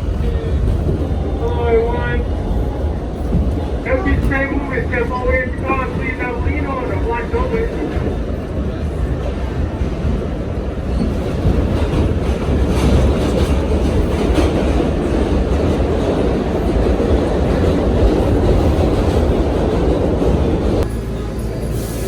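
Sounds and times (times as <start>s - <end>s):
subway train rumbling: 0.0s - 22.0s
wheels clattering on rails: 8.0s - 21.9s.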